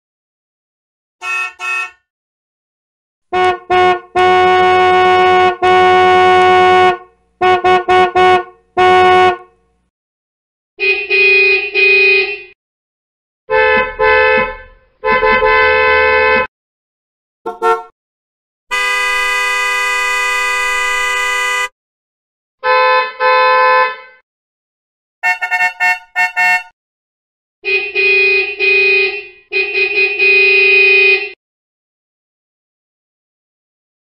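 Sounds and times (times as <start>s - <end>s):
car horn honking: 1.2s - 2.1s, 3.3s - 9.6s, 10.8s - 12.6s, 13.5s - 16.5s, 17.4s - 17.9s, 18.7s - 21.7s, 22.6s - 24.2s, 25.2s - 26.8s, 27.6s - 31.4s.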